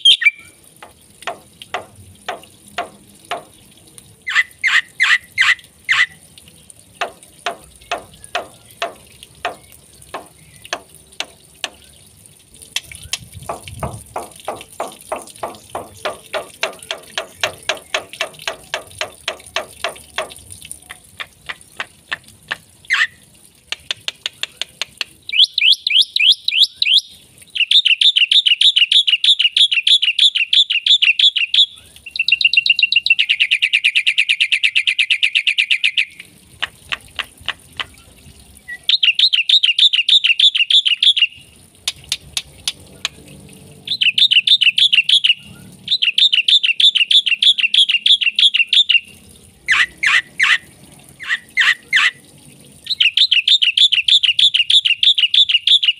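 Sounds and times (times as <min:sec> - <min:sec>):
bird rapid clicks: 0:12.7 - 0:22.6, 0:23.7 - 0:25.8, 0:41.8 - 0:43.2.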